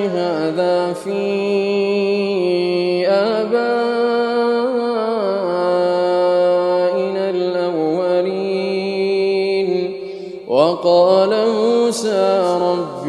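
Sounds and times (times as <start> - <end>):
man reciting melodically: 0.0 - 13.0.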